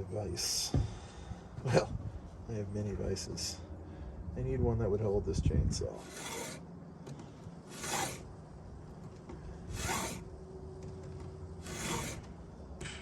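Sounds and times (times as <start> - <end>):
file rasping on chainsaw chain: 6.0 - 6.6, 7.7 - 8.3, 9.7 - 10.3, 11.6 - 12.3.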